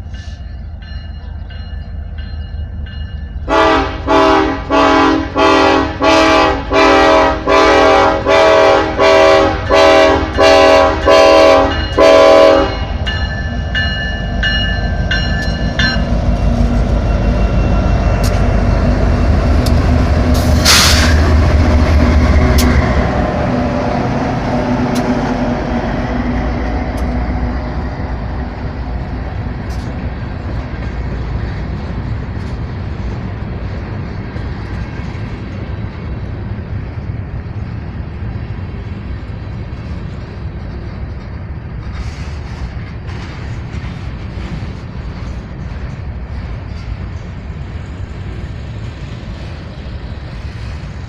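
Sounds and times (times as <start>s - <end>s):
freight train rumbling past: 0.0s - 51.0s
sharp hiss: 20.4s - 21.4s.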